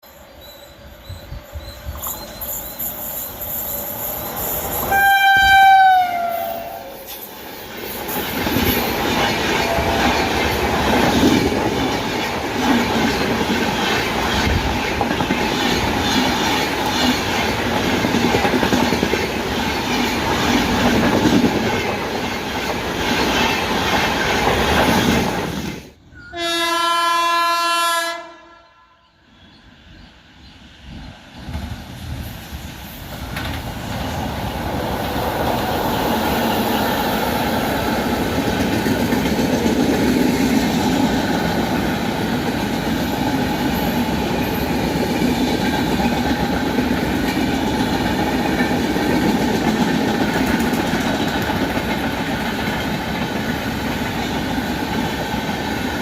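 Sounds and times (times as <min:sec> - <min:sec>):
train coaches rumbling over rails: 0:00.0 - 0:26.8, 0:29.2 - 0:56.0
locomotive horn: 0:04.9 - 0:07.1, 0:26.2 - 0:29.2.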